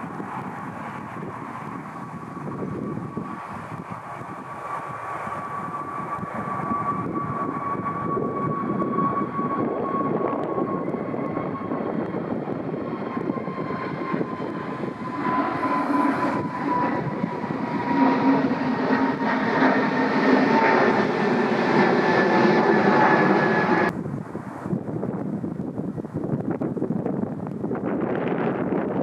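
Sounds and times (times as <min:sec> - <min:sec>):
jet airliner engines passing: 0:00.0 - 0:29.0.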